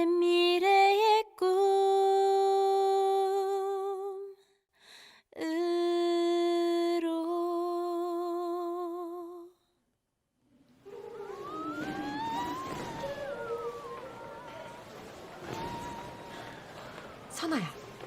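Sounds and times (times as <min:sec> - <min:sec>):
woman singing unaccompanied: 0:00.0 - 0:04.4, 0:05.4 - 0:09.5.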